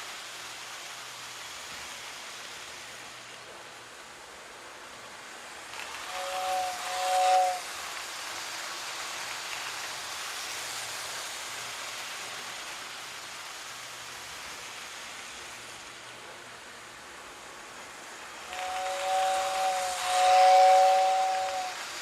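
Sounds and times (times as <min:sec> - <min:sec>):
steam-like hiss: 0:00.0 - 0:22.0
toy train whistle toot: 0:06.0 - 0:07.7, 0:18.4 - 0:21.9.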